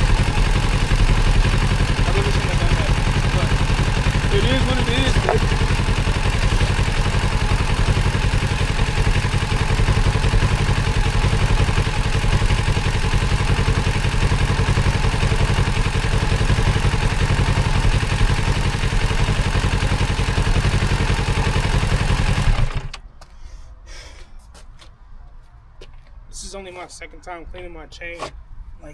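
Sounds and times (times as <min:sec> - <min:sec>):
motorcycle engine idling: 0:00.0 - 0:23.0.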